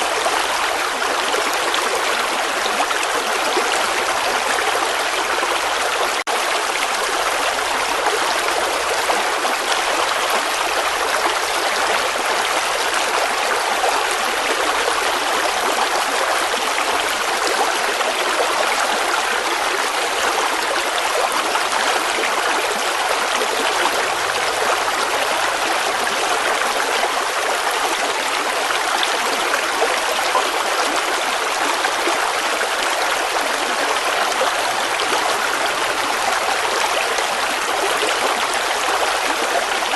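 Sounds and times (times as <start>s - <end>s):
stream water flowing over stones: 0.0s - 39.9s.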